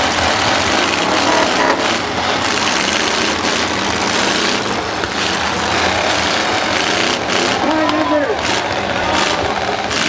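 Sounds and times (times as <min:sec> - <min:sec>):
car engines revving: 0:00.0 - 0:10.0.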